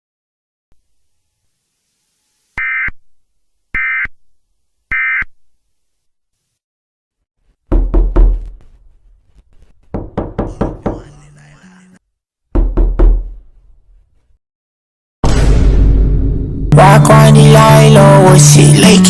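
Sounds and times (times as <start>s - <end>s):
deep knocking music beat: 7.7s - 8.5s, 10.0s - 11.2s, 12.6s - 13.3s.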